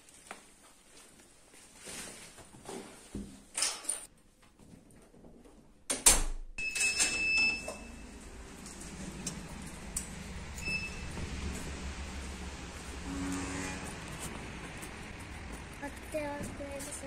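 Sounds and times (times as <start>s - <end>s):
low steady hum: 6.6s - 17.0s
electronic beep: 10.6s - 11.1s.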